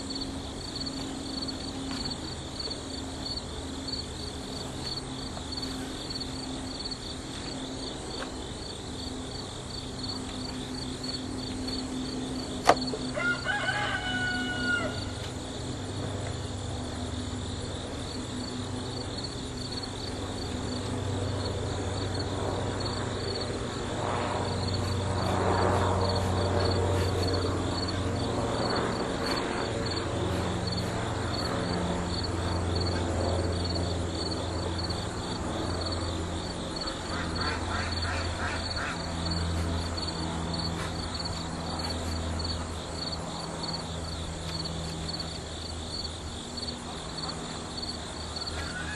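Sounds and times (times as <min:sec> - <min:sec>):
insects chirping: 0:00.0 - 0:48.9
rooster crowing: 0:13.0 - 0:15.3, 0:48.3 - 0:48.9.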